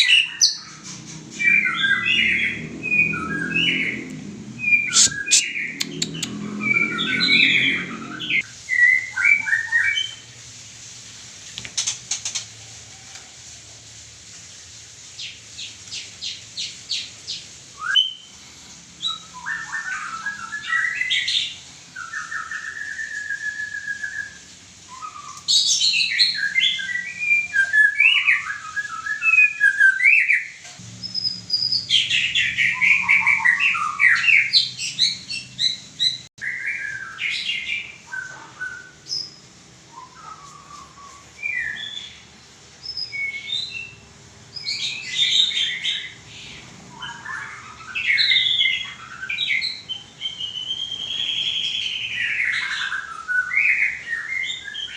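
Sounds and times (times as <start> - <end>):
bird singing whistled phrases: 1.4 - 10.2, 17.8 - 18.3, 19.0 - 54.9
rapid bird clicking notes: 5.3 - 6.3.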